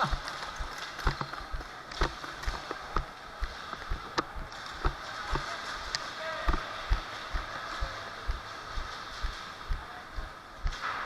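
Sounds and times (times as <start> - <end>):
sharp clicks: 0.0 - 8.4
irregular thuds: 0.0 - 11.0.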